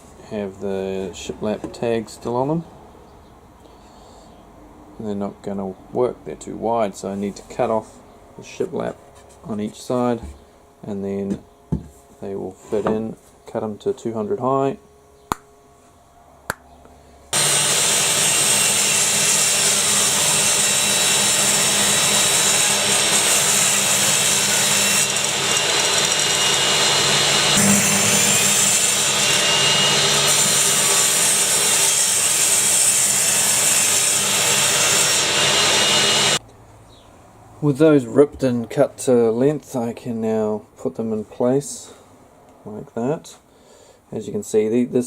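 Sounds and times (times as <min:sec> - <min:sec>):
power saw cutting wood: 0:17.3 - 0:36.4.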